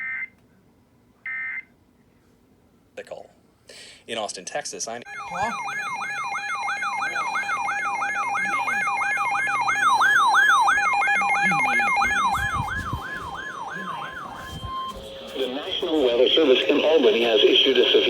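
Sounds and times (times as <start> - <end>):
electronic siren yelping: 5.0 - 18.0
steady electronic tone: 5.1 - 18.0.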